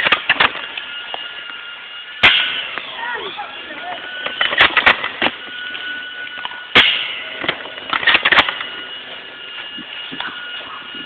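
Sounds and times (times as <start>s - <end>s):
airsoft guns firing: 2.2s - 2.8s.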